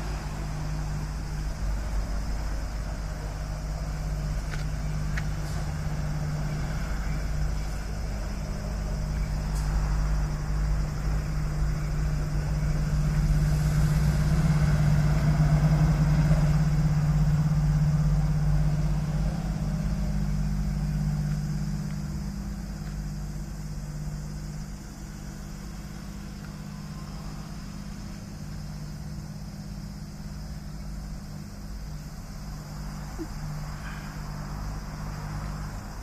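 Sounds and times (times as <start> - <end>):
vehicle engine running: 0.0 - 36.0.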